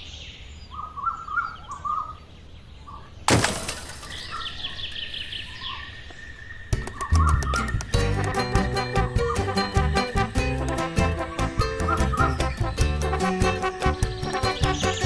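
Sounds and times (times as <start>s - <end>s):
birds chirping: 0.0s - 15.0s
music with steady beat: 6.8s - 15.0s.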